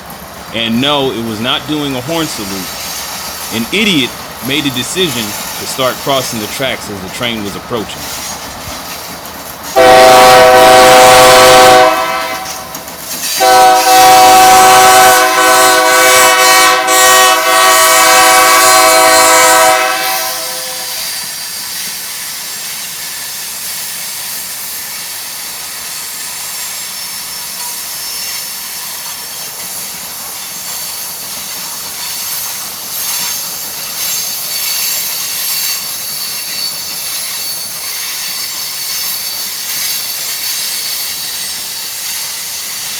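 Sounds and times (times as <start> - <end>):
freight train rolling by: 0.0 - 42.9
locomotive air horn blasts: 3.5 - 8.2, 9.8 - 21.1
faint wheel squeal: 32.0 - 42.8.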